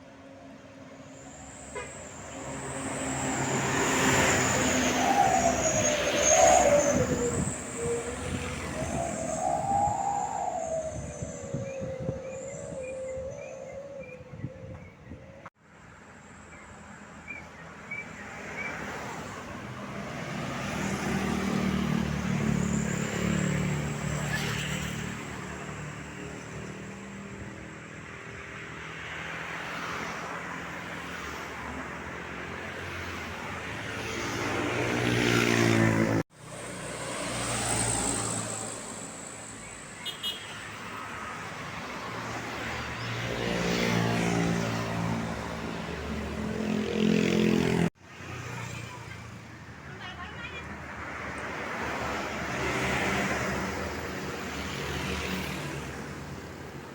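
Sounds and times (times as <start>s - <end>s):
vehicles passing by: 0.0s - 56.9s.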